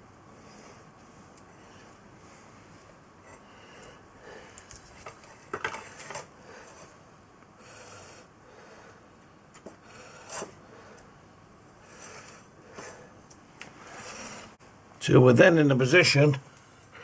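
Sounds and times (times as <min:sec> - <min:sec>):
rubbing scrapes: 0:13.8 - 0:14.6.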